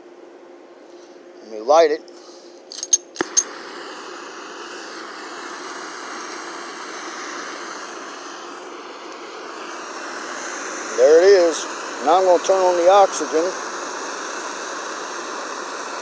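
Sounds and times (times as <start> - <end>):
torch striker clicks: 2.7 - 3.6
torch flame rushing: 3.2 - 16.0.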